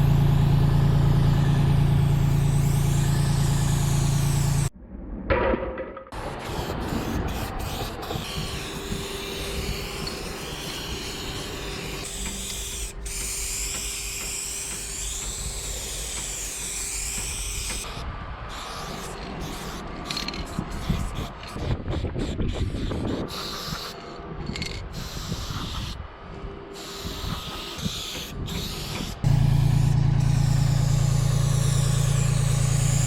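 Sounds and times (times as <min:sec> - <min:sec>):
aerosol spray can hissing: 0:09.2 - 0:17.8, 0:26.8 - 0:33.0.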